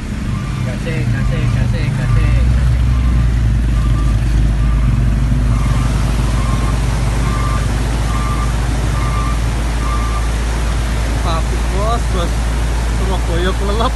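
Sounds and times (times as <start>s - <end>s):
floodwater rushing: 0.0s - 13.9s
vehicle engine rumble: 0.0s - 13.9s
short electronic beeps: 0.3s - 10.3s.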